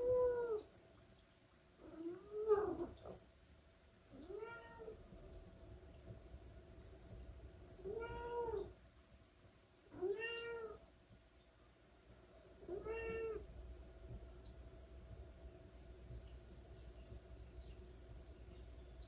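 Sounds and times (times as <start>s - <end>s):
cat meowing: 4.2s - 4.9s, 7.8s - 8.7s, 10.0s - 10.8s, 12.7s - 13.4s.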